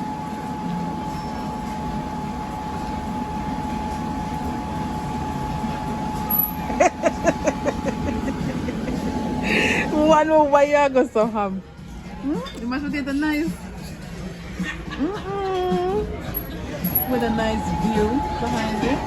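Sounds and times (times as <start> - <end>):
low mechanical rumble with whine: 0.0 - 12.6, 15.0 - 19.0.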